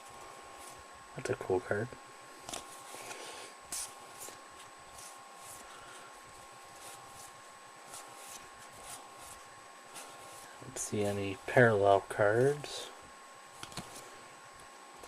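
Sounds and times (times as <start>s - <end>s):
faint electrical whine: 0.0s - 15.0s
cards swishing: 2.4s - 5.8s, 6.5s - 10.5s, 13.6s - 14.2s.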